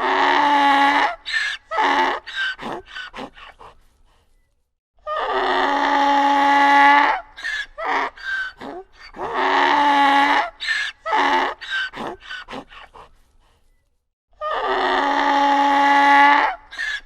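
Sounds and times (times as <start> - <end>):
donkey braying: 0.0 - 3.8, 5.1 - 13.1.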